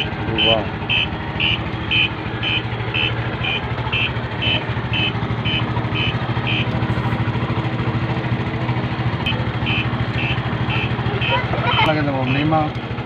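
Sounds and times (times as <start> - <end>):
motorcycle engine idling: 0.0 - 13.0
turn-signal buzzer beeping: 0.4 - 6.6.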